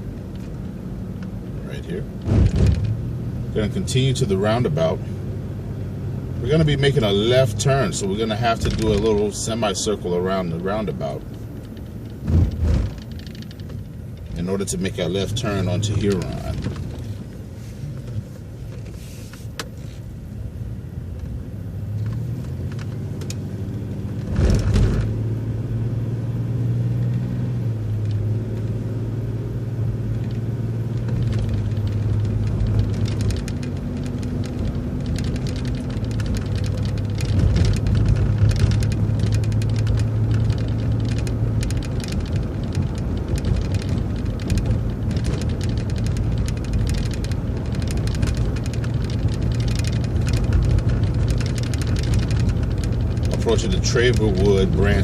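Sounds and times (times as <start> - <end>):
bus engine drone: 0.0 - 55.0
thump: 2.2 - 2.9, 12.2 - 13.0
light rattling: 6.8 - 20.0, 30.1 - 55.0.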